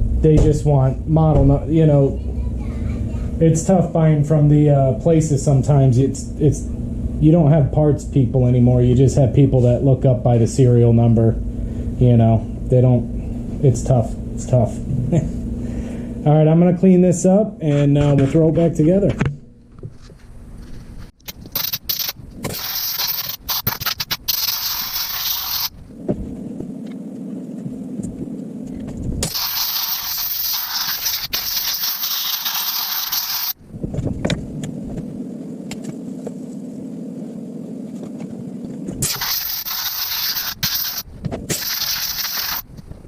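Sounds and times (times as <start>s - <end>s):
steady low hum: 0.0s - 43.0s
spray nozzle hissing: 21.3s - 25.7s, 29.2s - 33.6s, 39.0s - 42.6s.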